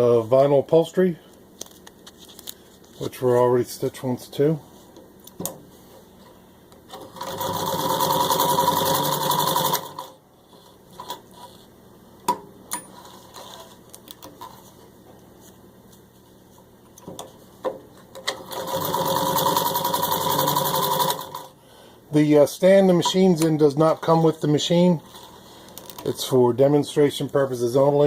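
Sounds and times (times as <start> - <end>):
sewing machine running fast: 7.0 - 10.1, 18.4 - 21.5.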